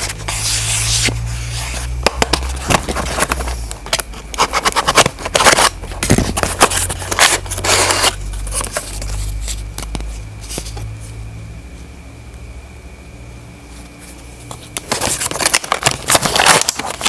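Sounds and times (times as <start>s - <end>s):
clicks and scrapes of handling: 0.0s - 10.9s
steady low hum: 0.0s - 17.0s.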